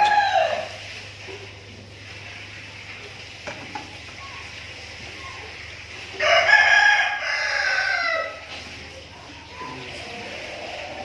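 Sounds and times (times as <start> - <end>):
rooster crowing: 0.0 - 0.8, 6.2 - 8.4.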